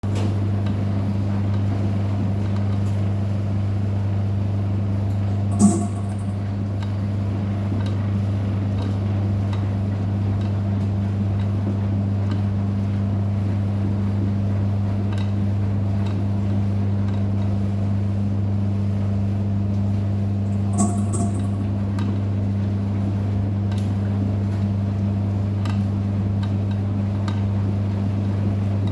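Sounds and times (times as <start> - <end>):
washing machine humming: 0.0 - 28.9
short sharp click: 5.5 - 6.4.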